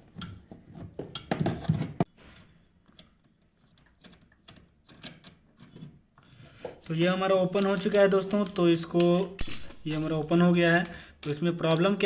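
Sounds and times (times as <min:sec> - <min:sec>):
metal tools clinking and scraping: 0:09.0 - 0:10.2.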